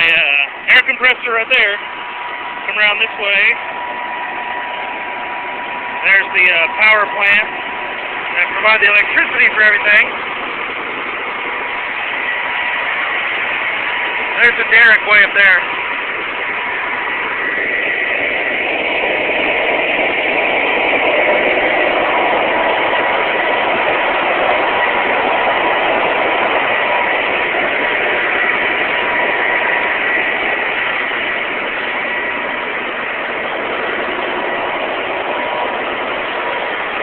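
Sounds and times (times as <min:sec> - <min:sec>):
drilling rig machinery din: 0:00.0 - 0:37.0
thin high whine: 0:00.0 - 0:37.0.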